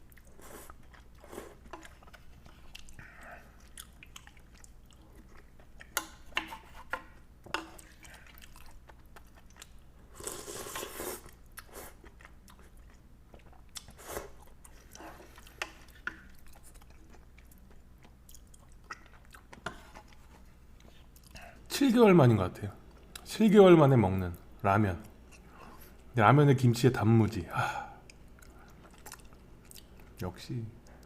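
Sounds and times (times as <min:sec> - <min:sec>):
person chewing and crunching: 0:00.0 - 0:06.2, 0:07.7 - 0:21.4, 0:28.0 - 0:30.2.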